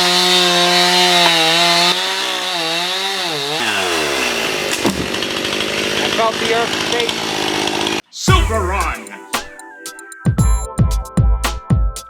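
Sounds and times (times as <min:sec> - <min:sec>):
chainsaw engine running: 0:00.0 - 0:09.0.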